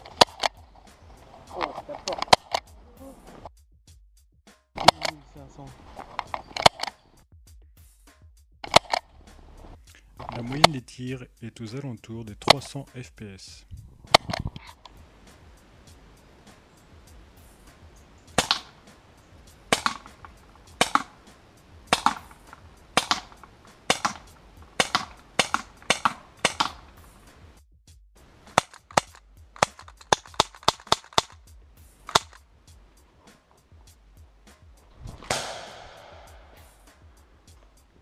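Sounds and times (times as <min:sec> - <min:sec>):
airsoft pistol shots: 0:18.4 - 0:18.8, 0:19.7 - 0:21.3, 0:21.9 - 0:27.0, 0:32.1 - 0:32.4, 0:35.2 - 0:36.7.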